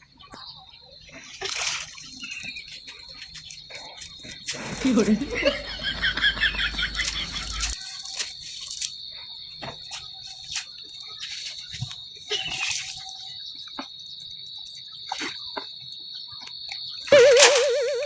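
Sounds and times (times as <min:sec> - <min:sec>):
high-pitched insect drone: 0:04.6 - 0:07.8, 0:17.1 - 0:18.0.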